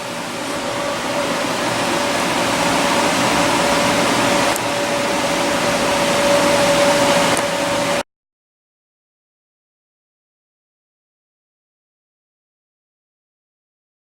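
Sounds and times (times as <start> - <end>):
loud even rushing noise: 0.0 - 8.0
steady hum: 0.0 - 8.0.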